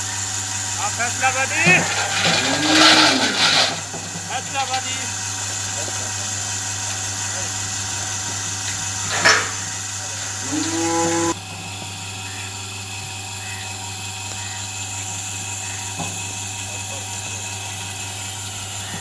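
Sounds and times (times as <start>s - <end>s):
milking machine motor hum: 0.0s - 19.0s.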